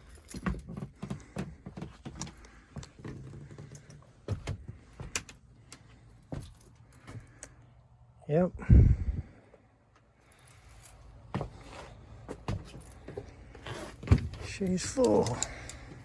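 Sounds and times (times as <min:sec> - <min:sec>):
clicks and rattles of equipment: 0:00.0 - 0:07.6, 0:12.6 - 0:16.0.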